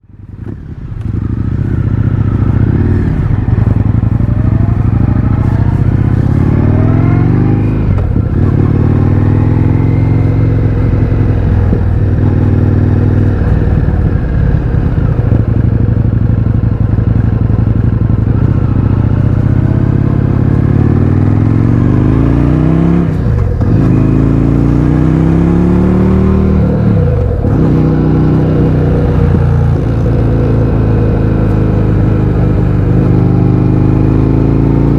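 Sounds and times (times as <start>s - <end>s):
motorcycle engine accelerating through gears: 0.0s - 34.9s.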